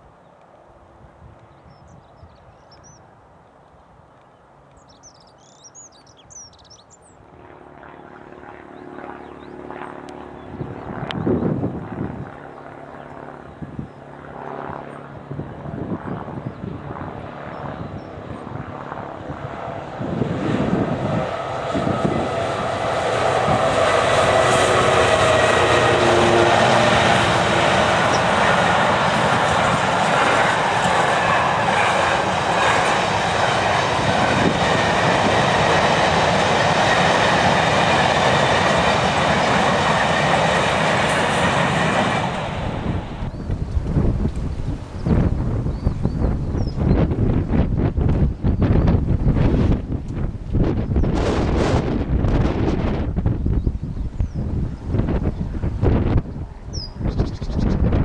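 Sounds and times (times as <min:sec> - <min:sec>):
train wheels rushing on rails: 0:20.7 - 0:44.8.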